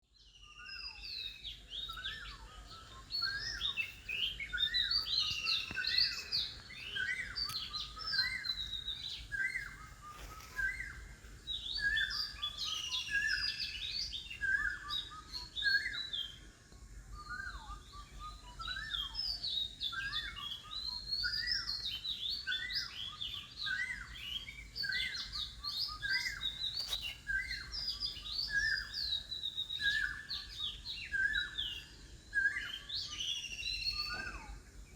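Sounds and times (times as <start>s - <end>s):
birds chirping and singing: 0.1s - 34.9s.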